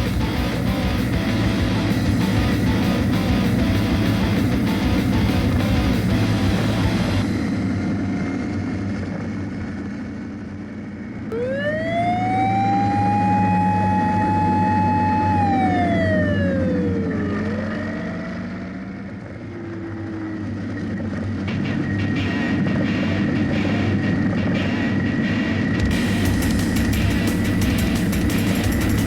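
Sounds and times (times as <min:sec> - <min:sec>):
motorcycle engine whine: 0:00.0 - 0:29.0.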